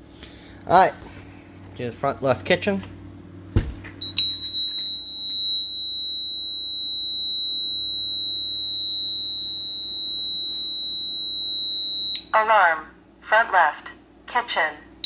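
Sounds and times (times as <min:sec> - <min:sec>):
alarm panel high-pitched tone: 0:04.0 - 0:12.4.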